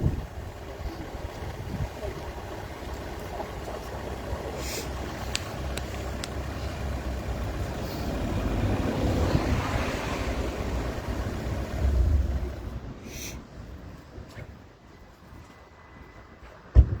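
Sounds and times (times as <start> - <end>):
motor vehicle passing: 0.0 - 12.9
steady low rumble: 0.0 - 14.3.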